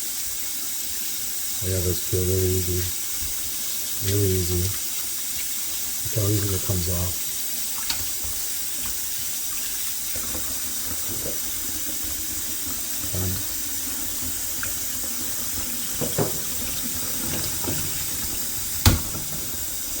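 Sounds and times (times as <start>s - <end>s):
tap running into sink: 2.8s - 20.0s
faint knocks: 15.9s - 18.0s.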